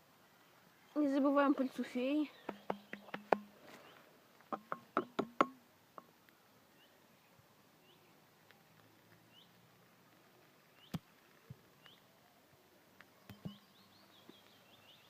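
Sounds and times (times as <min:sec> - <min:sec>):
bird chirps: 0:01.7 - 0:04.0, 0:09.3 - 0:09.6, 0:10.7 - 0:11.1, 0:13.1 - 0:15.0
sharp knocks: 0:02.4 - 0:03.5, 0:04.5 - 0:05.6.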